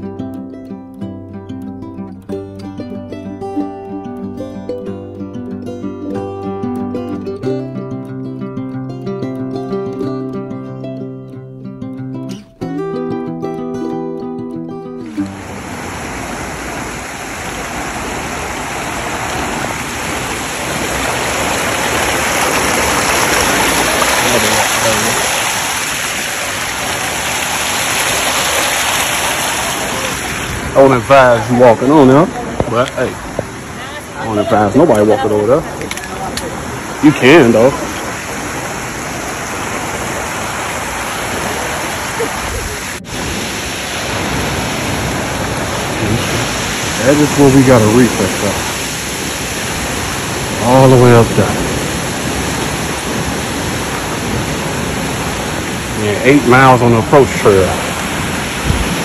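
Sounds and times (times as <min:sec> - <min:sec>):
waterfall roaring: 0:15.0 - 0:59.0.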